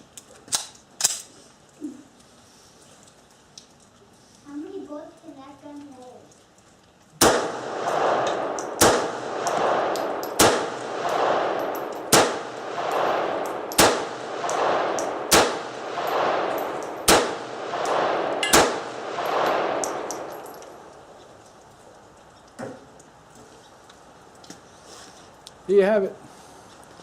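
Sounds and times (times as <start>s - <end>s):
pistol shots with ringing echo: 7.2s - 21.2s.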